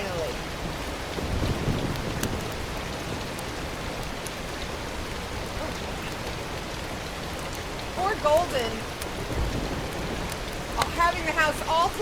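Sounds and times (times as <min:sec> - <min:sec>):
faint clicks: 0:01.9 - 0:02.6, 0:07.3 - 0:07.7, 0:08.3 - 0:09.2, 0:09.9 - 0:11.0.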